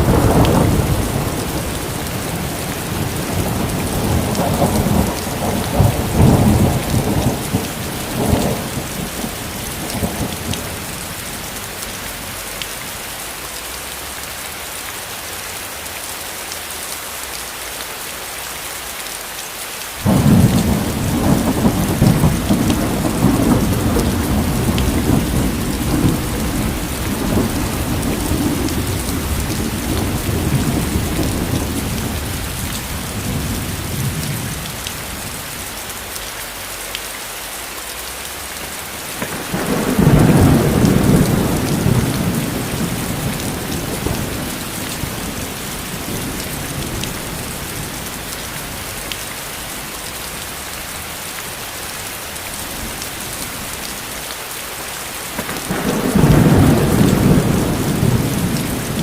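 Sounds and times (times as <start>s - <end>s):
thunder rumbling: 0.0s - 12.5s, 20.0s - 35.5s, 38.5s - 50.0s, 55.3s - 59.0s
heavy rain: 0.0s - 59.0s.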